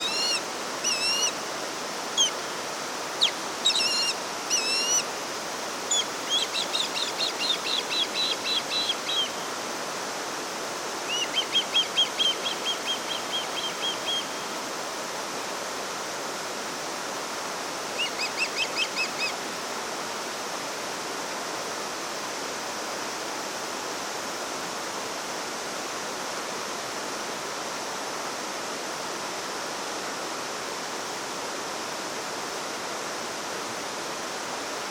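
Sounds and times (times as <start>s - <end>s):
small bird chirping and trilling: 0.0s - 1.4s, 2.2s - 2.4s, 3.2s - 5.0s, 5.9s - 9.3s
running water rushing: 0.0s - 34.9s.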